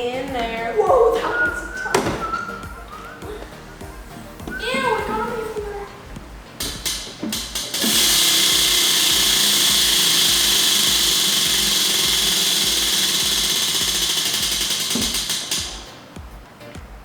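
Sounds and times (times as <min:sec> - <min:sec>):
background music with steady beat: 0:00.0 - 0:17.0
small electric motor whirring: 0:06.6 - 0:16.0.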